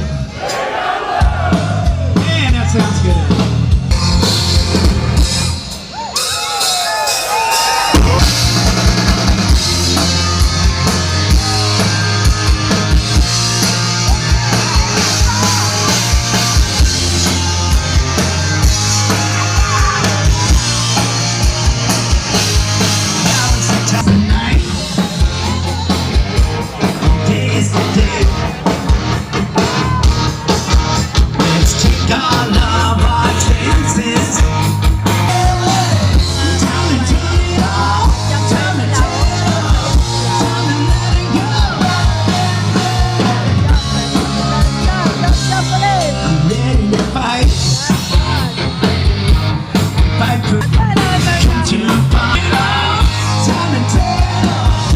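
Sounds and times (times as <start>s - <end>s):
drum-kit beat: 1.2s - 54.9s
repeating bass line: 1.3s - 5.7s, 7.9s - 54.9s
person singing: 31.3s - 48.2s, 50.2s - 54.9s.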